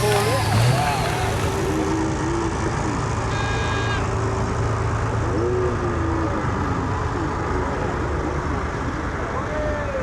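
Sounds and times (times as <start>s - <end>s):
truck engine idling: 0.0s - 3.3s.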